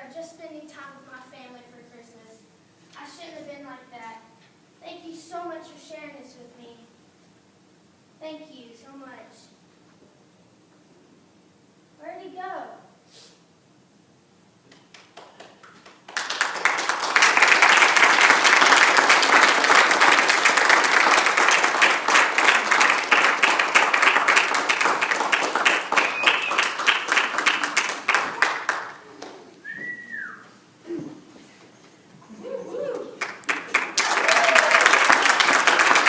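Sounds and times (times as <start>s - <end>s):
audience applauding: 14.8s - 29.5s, 33.0s - 36.0s.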